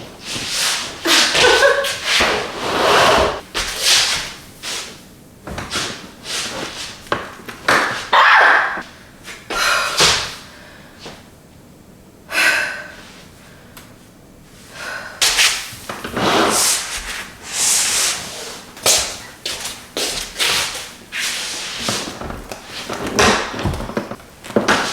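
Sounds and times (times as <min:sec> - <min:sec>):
rustling and knocking of objects: 0:21.8 - 0:24.9.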